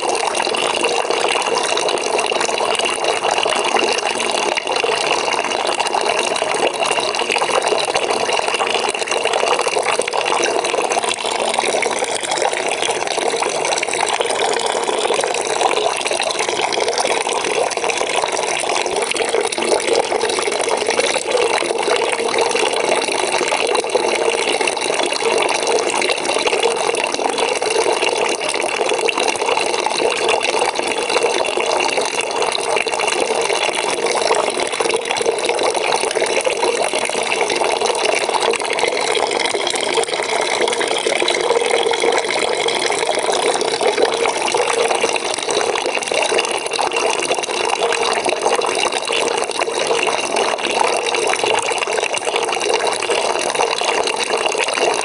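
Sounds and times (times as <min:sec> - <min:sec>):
tap water pouring into bucket: 0:00.0 - 0:55.0.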